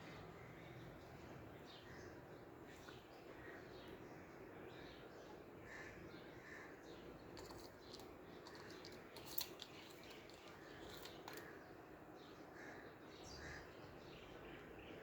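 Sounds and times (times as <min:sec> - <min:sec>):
small clicks and taps: 0:07.4 - 0:11.5.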